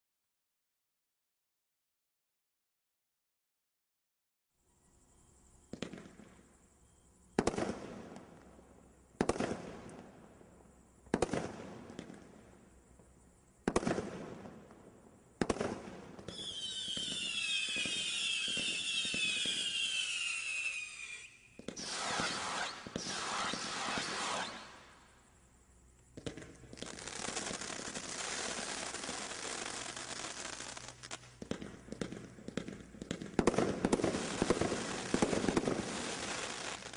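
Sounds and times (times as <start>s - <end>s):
firework shots: 7.4s - 8.4s, 9.2s - 10.1s, 11.1s - 12.4s, 13.6s - 14.6s, 15.4s - 25.2s, 26.2s - 36.9s
dense firework crackling: 13.6s - 25.2s, 26.1s - 36.9s
shrill wavering firework whistle: 16.2s - 25.2s, 33.9s - 36.9s.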